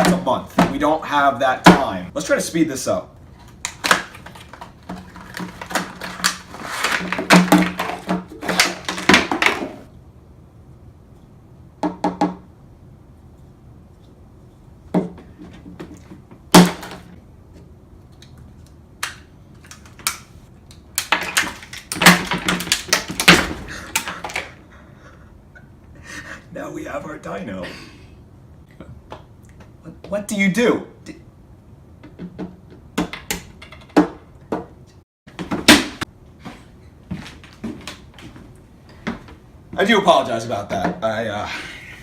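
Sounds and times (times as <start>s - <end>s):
toy egg cracking and clattering: 19.0s - 24.5s.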